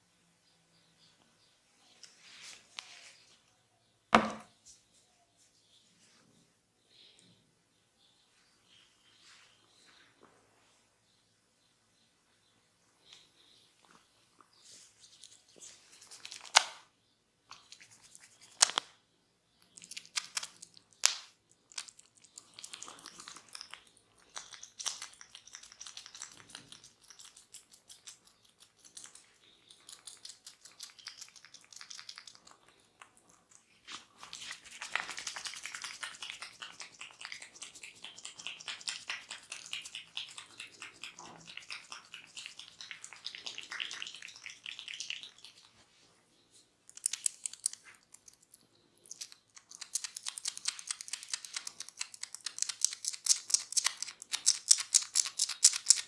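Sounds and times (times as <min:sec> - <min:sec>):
fingers rubbing skin and hair: 0:33.5 - 0:45.8, 0:49.1 - 0:56.0.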